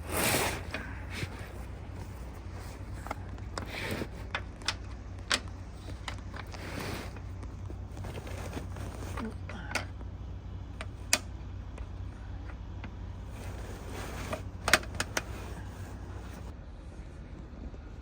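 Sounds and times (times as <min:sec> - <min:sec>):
hardware sliding scrapes: 0:00.0 - 0:09.4, 0:13.2 - 0:16.5
steady low hum: 0:00.0 - 0:18.0.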